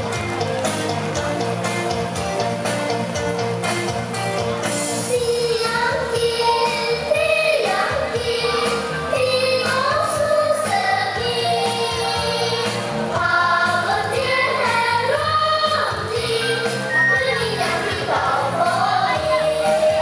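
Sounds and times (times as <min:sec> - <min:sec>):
backing music: 0:00.0 - 0:20.0
high singing voice: 0:05.1 - 0:20.0.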